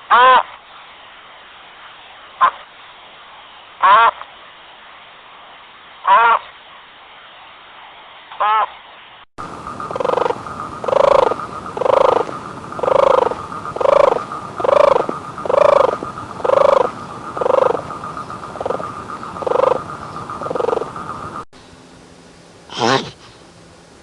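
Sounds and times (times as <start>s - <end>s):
animal calling: 8.4s - 8.7s, 9.6s - 21.5s, 22.7s - 23.5s
steady high background tone: 9.4s - 24.0s.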